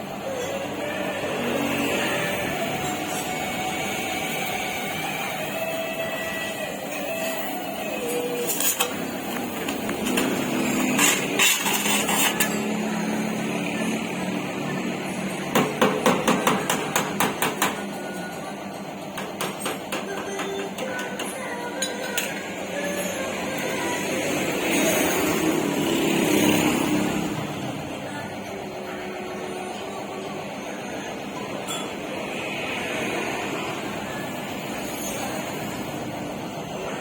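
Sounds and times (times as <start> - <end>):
hammer striking sheet metal: 15.5 - 17.9.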